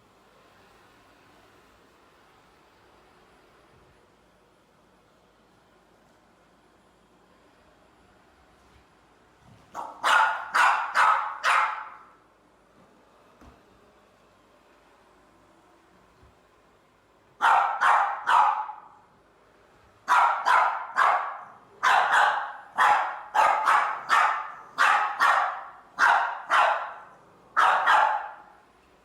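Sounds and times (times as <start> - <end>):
dog barking: 9.8 - 12.2, 17.4 - 19.0, 20.1 - 28.6.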